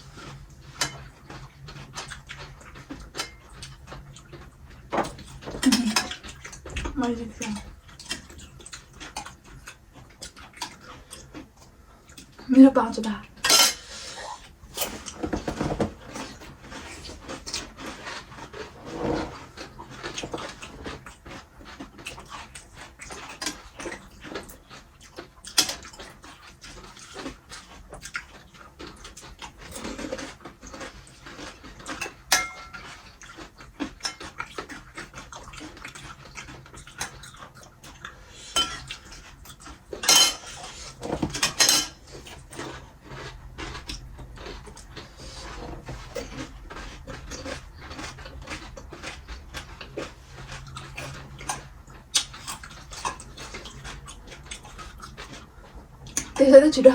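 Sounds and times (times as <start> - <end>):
dishes clattering: 4.9 - 6.2, 13.4 - 13.9, 32.0 - 32.8, 38.5 - 38.9, 40.0 - 42.0
dishes and utensils clinking: 5.0 - 6.2, 13.4 - 13.9, 32.0 - 33.0, 38.5 - 39.0, 40.0 - 42.0.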